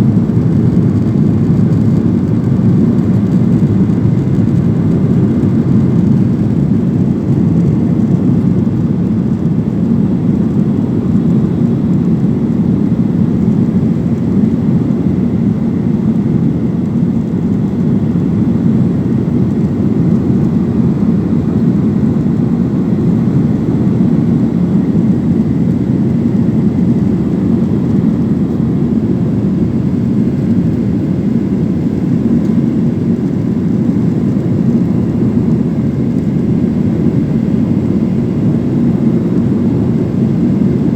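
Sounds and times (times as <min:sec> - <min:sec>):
jet engine rumble in cabin: 0:00.0 - 0:40.9.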